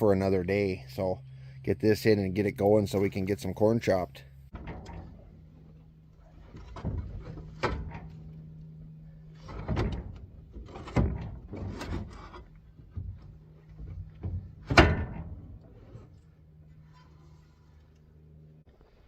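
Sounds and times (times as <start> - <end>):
faint low hum: 0.0 - 19.0
metal parts clanking and scraping: 4.5 - 18.0.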